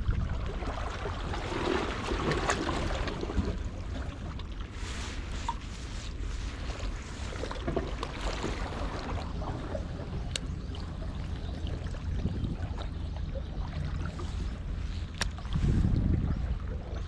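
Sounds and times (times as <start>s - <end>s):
wind and sea water rumble: 0.0s - 17.0s
light ticks: 10.3s - 10.5s.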